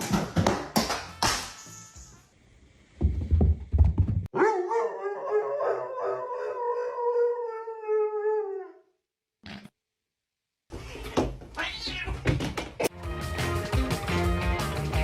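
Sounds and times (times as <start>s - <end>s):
dog howling: 4.4s - 8.9s.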